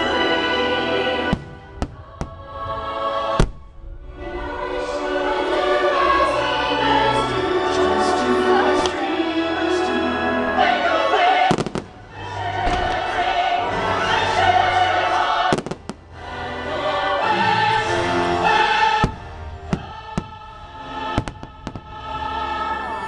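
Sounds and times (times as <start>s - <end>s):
choir and orchestra music: 0.0s - 23.0s.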